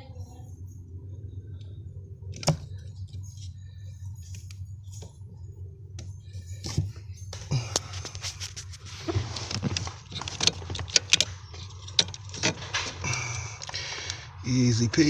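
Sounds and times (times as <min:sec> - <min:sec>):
rustling: 0:00.6 - 0:15.0
plastic clicks and rattles: 0:06.0 - 0:14.3.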